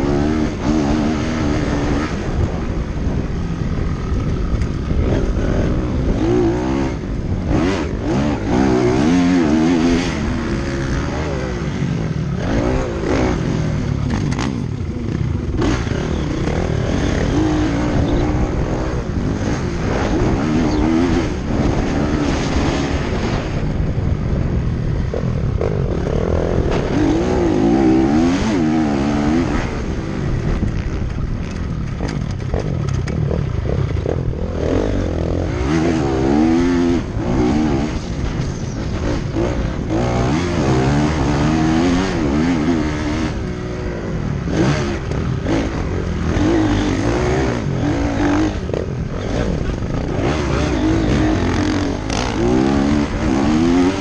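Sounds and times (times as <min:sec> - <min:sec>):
dirt bike engines revving: 0:00.0 - 0:54.0.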